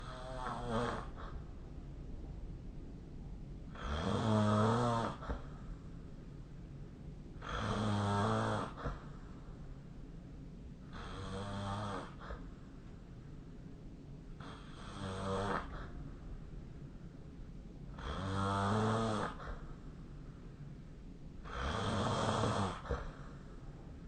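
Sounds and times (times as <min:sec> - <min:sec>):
person snoring: 0:00.0 - 0:01.4, 0:03.7 - 0:05.5, 0:07.4 - 0:09.0, 0:10.9 - 0:12.4, 0:14.4 - 0:15.9, 0:18.0 - 0:19.6, 0:21.4 - 0:23.4
quiet breathing: 0:00.0 - 0:24.0.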